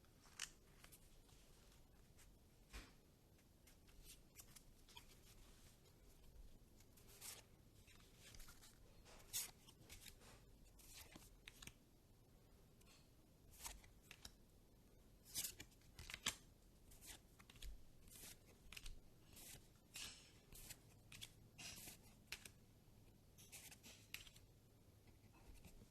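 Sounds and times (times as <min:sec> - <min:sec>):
trading cards sliding and flicking: 0:07.0 - 0:11.7, 0:13.5 - 0:14.4, 0:15.2 - 0:22.6, 0:23.4 - 0:24.4, 0:25.4 - 0:25.9.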